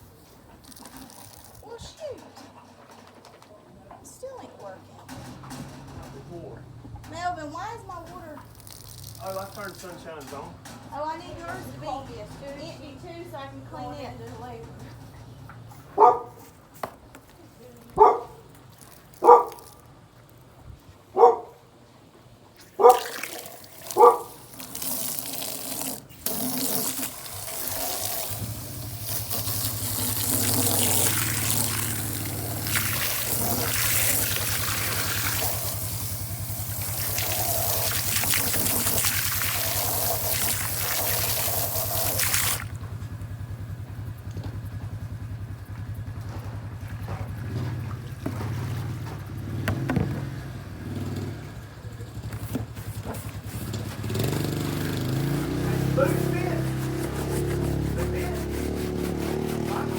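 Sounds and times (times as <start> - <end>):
hose water gushing into bucket: 0.0 - 1.9, 8.2 - 10.2, 22.6 - 42.8, 45.6 - 50.0, 52.4 - 59.9
dog barking: 15.9 - 16.5, 18.0 - 18.5, 19.2 - 19.7, 21.1 - 21.6, 22.7 - 23.2, 23.9 - 24.4.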